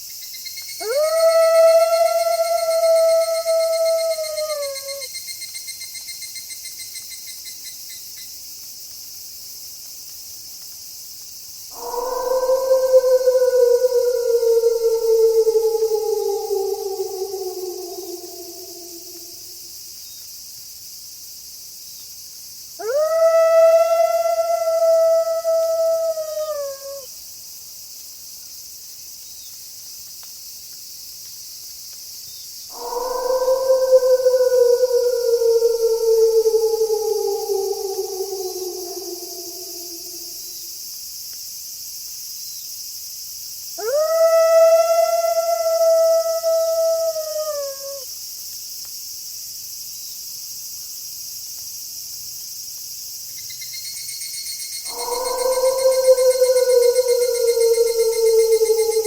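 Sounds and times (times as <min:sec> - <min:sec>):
night insects chorus: 0:00.0 - 0:59.0
wolf howling: 0:00.8 - 0:05.1, 0:11.7 - 0:19.7, 0:22.8 - 0:27.1, 0:32.7 - 0:40.6, 0:43.8 - 0:48.0, 0:54.8 - 0:59.0.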